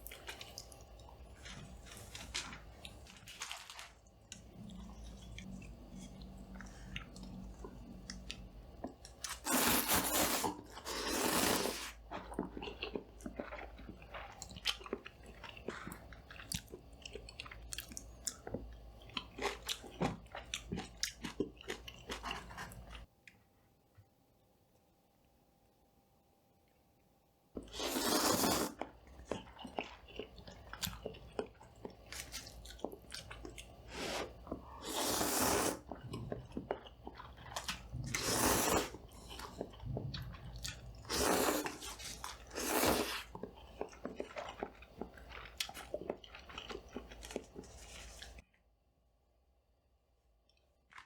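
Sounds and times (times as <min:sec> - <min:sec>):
wet chewing and mouth clicks: 0:12.0 - 0:23.1, 0:27.6 - 0:48.4.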